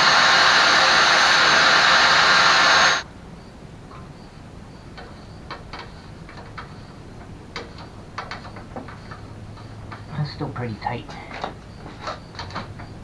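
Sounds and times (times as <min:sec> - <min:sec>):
power tool whirring: 0:00.0 - 0:03.0.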